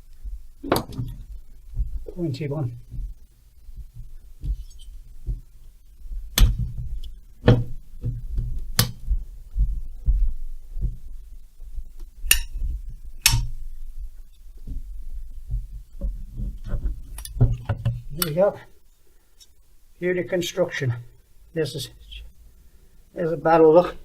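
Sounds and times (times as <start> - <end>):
low knocks of handling: 0.1 - 18.1.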